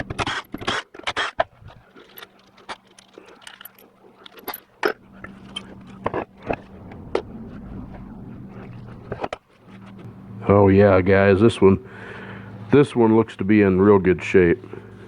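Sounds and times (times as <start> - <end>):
metal parts clinking: 0.0 - 6.7
steady low hum: 1.4 - 15.0.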